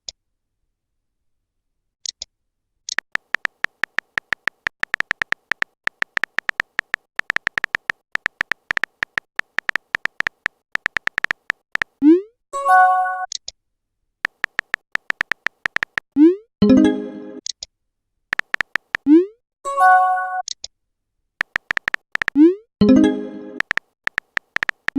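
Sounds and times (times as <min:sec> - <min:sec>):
phone keyboard taps: 0:02.9 - 0:12.0, 0:14.2 - 0:16.0, 0:18.3 - 0:19.1, 0:21.4 - 0:22.4, 0:23.6 - 0:24.9.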